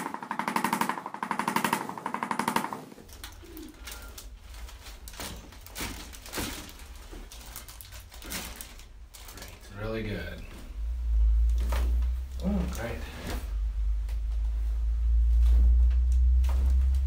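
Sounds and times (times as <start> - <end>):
low hum: 0.6 - 17.0
rustling: 3.0 - 17.0.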